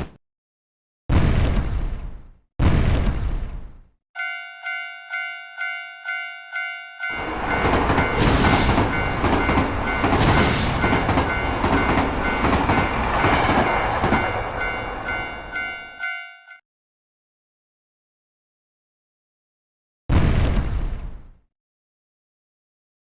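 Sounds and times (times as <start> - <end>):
railroad crossing bell ringing: 4.2 - 16.6
train rumbling and clattering: 7.0 - 16.0.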